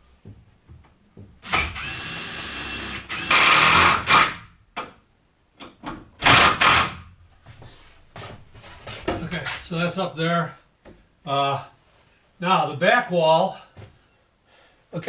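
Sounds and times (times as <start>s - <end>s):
power drill driving screws into wood: 1.4s - 4.5s, 6.2s - 7.0s.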